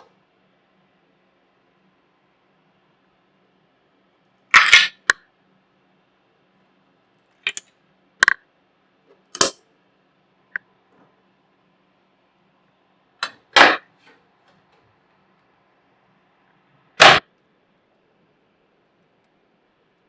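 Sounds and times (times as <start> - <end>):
clicks of small hard objects: 4.6 - 5.2, 7.5 - 8.4.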